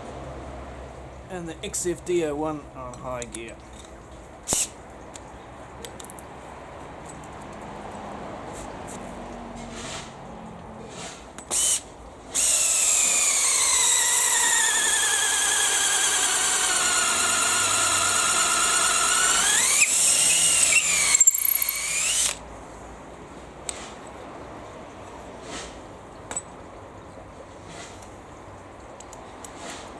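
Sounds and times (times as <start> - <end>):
cordless drill whining: 11.5 - 11.8, 12.4 - 22.4.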